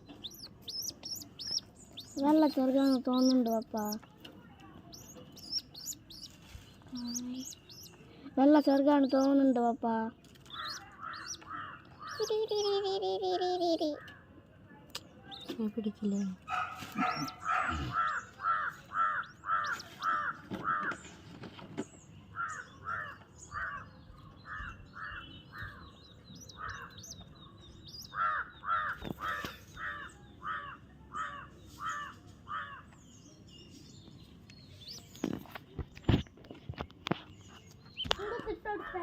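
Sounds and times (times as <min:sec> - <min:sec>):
bird calling harsh notes: 0:16.5 - 0:20.8.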